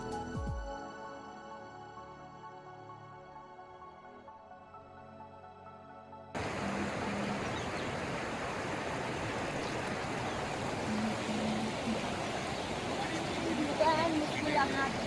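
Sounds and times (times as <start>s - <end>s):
river water rushing: 6.4s - 15.0s.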